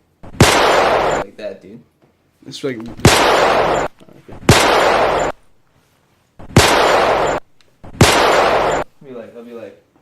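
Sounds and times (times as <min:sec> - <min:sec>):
automatic gunfire bursts: 0:00.3 - 0:01.3, 0:03.0 - 0:05.4, 0:06.4 - 0:08.9.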